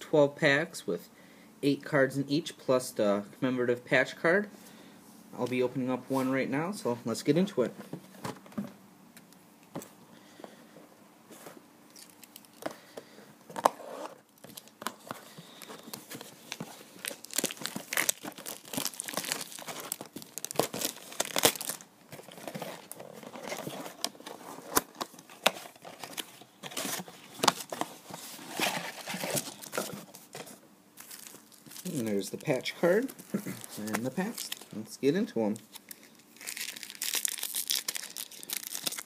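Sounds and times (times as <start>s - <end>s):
cardboard packaging tearing: 13.6s - 30.4s, 35.8s - 39.0s.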